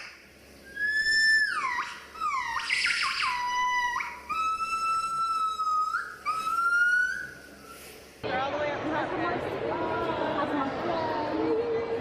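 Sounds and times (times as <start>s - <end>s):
gibbon whistle-like hoots: 0.0s - 7.9s.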